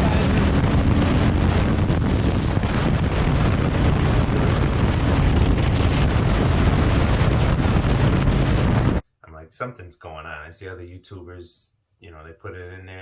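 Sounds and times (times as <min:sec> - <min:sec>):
wind buffeting helmet microphone: 0:00.0 - 0:09.0.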